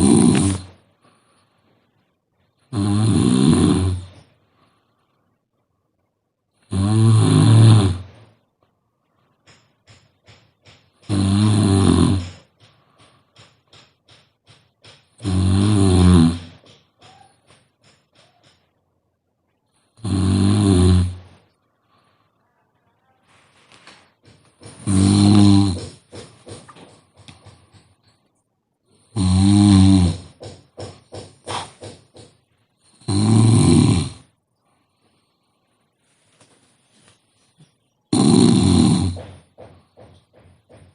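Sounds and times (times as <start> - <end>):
woman snoring: 0.0 - 0.8, 2.7 - 4.2, 6.7 - 8.2, 11.1 - 12.5, 15.2 - 16.6, 20.0 - 21.3, 24.8 - 26.0, 29.0 - 30.4, 32.9 - 34.3, 38.1 - 39.3
short sputtering breaths: 31.2 - 32.2.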